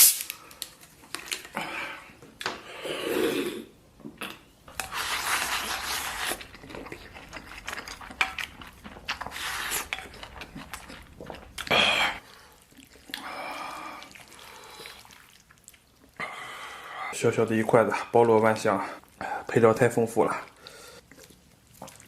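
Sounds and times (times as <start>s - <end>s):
man chewing and slurping: 4.7s - 16.3s.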